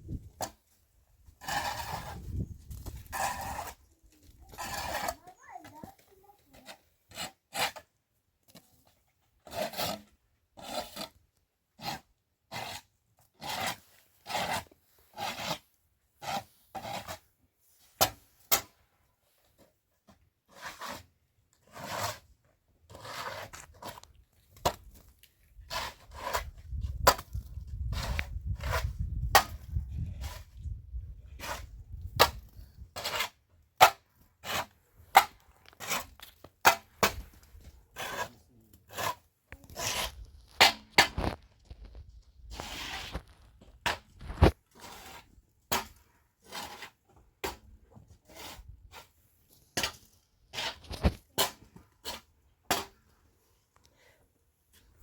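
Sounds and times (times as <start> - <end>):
rubbing or scraping strokes: 1.4 - 5.9, 25.5 - 47.6, 48.2 - 53.0.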